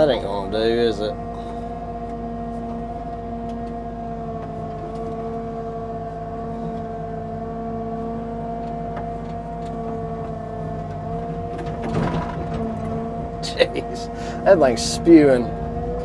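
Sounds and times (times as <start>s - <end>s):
digging machine engine running: 0.0s - 16.0s
short rough noise: 11.4s - 16.0s.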